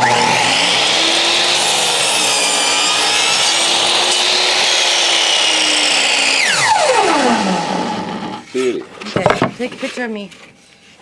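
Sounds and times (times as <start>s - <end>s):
miter saw cutting wood: 0.0s - 8.5s.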